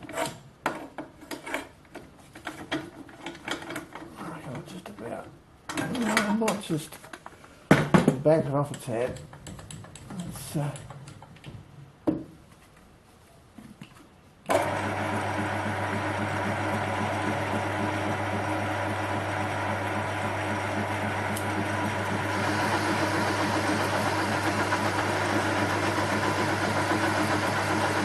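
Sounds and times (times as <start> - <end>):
metal lathe running: 14.5 - 28.0.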